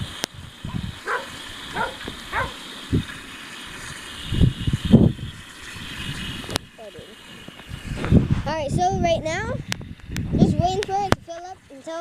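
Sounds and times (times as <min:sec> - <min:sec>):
dog yipping and barking: 0:00.7 - 0:02.6.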